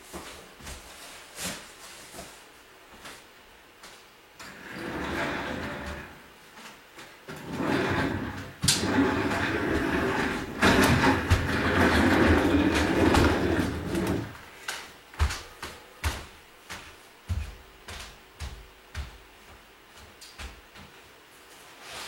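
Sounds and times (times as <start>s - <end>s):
heavy box scraping across floor: 7.3s - 14.4s, 21.7s - 22.0s.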